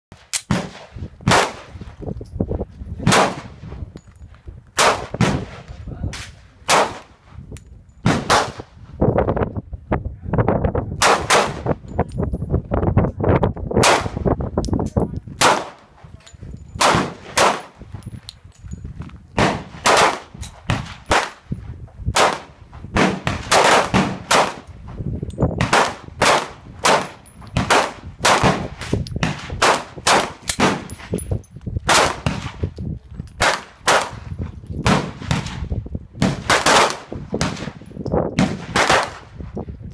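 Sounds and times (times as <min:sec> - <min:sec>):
gunshots with echo: 0:16.8 - 0:17.8, 0:19.4 - 0:21.4, 0:22.2 - 0:24.7, 0:25.6 - 0:30.9, 0:36.2 - 0:37.8, 0:38.4 - 0:39.3.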